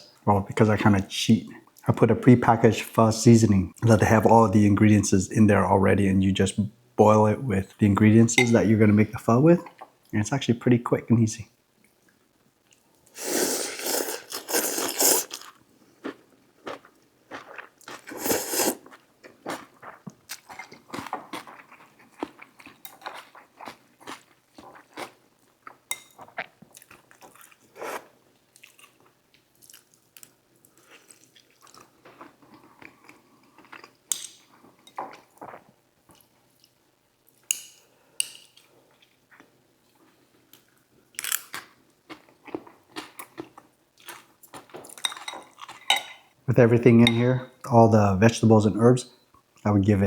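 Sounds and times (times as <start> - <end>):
chewing and crunching food: 13.8 - 37.4, 38.4 - 46.3.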